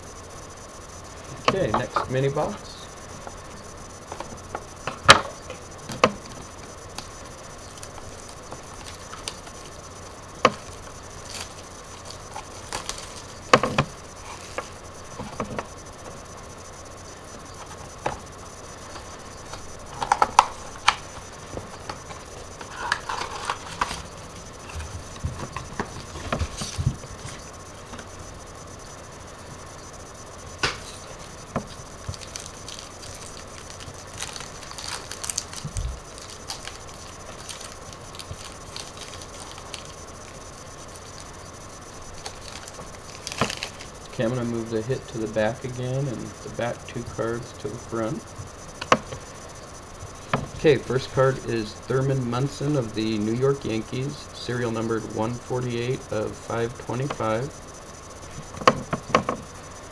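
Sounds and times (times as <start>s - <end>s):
cards rustling and scraping: 10.6s - 15.6s, 18.9s - 27.5s.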